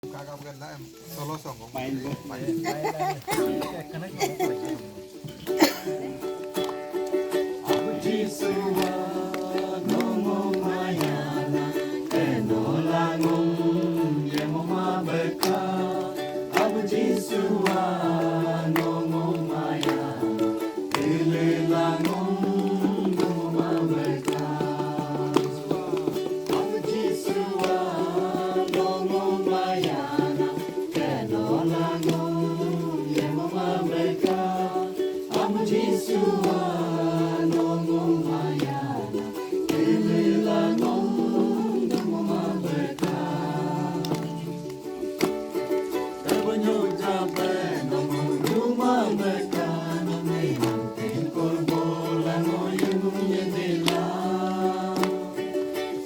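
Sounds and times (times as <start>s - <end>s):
voices singing gospel song: 0.0s - 56.0s.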